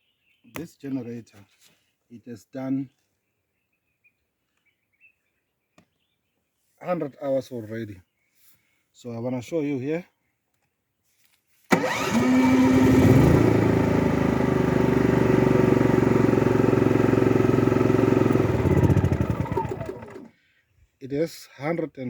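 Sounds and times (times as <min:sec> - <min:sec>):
generator engine running: 0:11.7 - 0:20.3.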